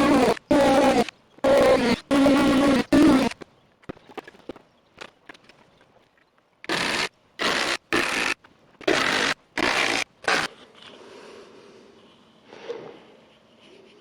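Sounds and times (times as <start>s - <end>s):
rasping scraping strokes: 0.0s - 3.4s, 6.7s - 10.7s.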